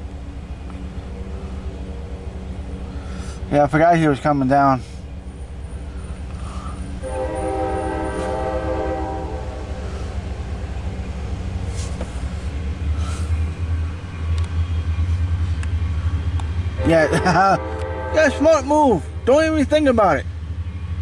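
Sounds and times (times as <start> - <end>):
train rumble: 0.0 - 21.0
locomotive air horn: 6.4 - 10.3, 16.8 - 19.6.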